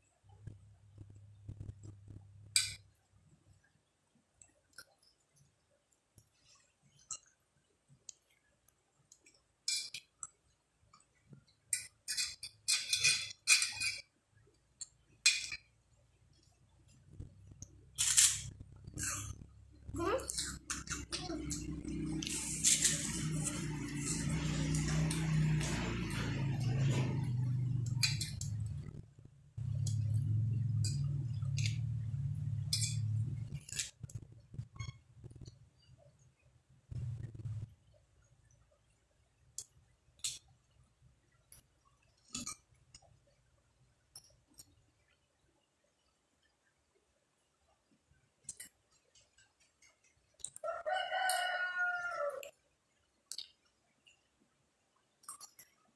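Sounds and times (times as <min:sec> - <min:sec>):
low steady hum: 0:00.0 - 0:50.8
eating scraping and clinking: 0:09.2 - 0:10.4, 0:11.7 - 0:14.1, 0:18.0 - 0:19.6, 0:20.2 - 0:29.0, 0:29.6 - 0:35.6
eating clinks and crunches: 0:18.0 - 0:19.4, 0:55.2 - 0:55.8
faint small clicks: 0:53.3 - 0:54.2.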